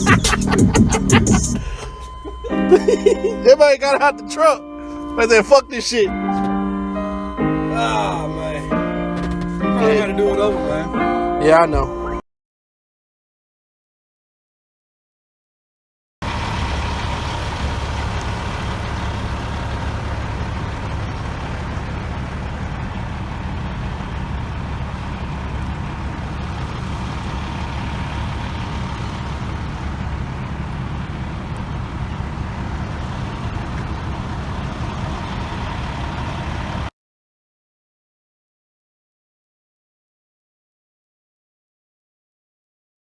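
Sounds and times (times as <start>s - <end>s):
motor vehicle rumble: 0.0s - 11.1s, 16.2s - 36.9s.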